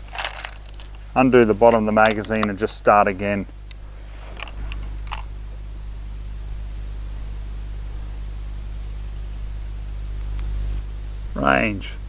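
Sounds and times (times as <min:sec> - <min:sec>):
low hum and hiss: 0:00.0 - 0:12.0.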